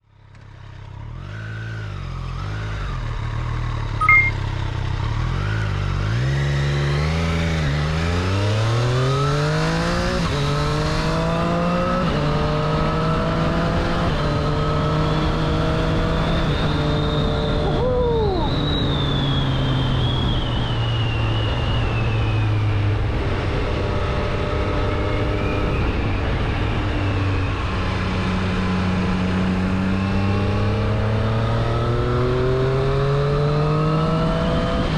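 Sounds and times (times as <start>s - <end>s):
motorcycle engine accelerating: 0.6s - 34.9s.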